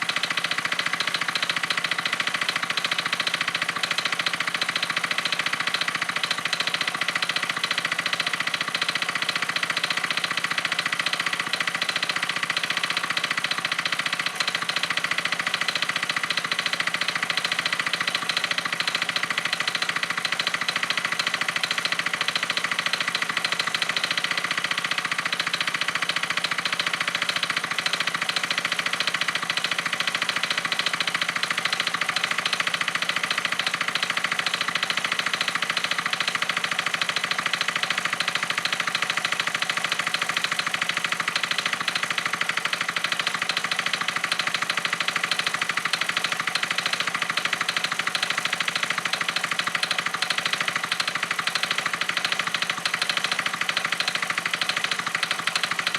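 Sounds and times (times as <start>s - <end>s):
scooter engine idling: 0.0s - 55.9s
fast even ticking: 30.0s - 55.9s.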